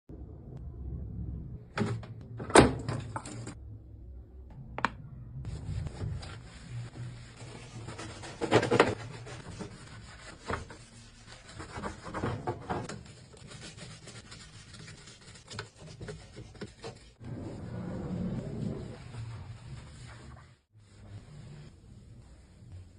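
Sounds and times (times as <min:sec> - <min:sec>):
scrubbing and scraping: 0:05.5 - 0:22.9.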